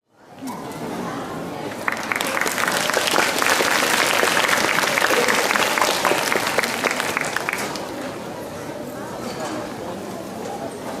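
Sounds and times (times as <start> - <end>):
audience applauding: 1.7 - 7.9.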